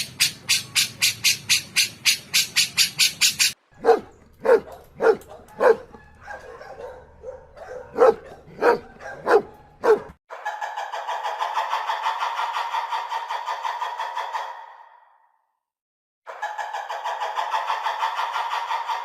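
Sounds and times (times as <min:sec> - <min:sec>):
rapid high clicking calls: 0:00.0 - 0:03.6
dog barking: 0:03.8 - 0:10.2.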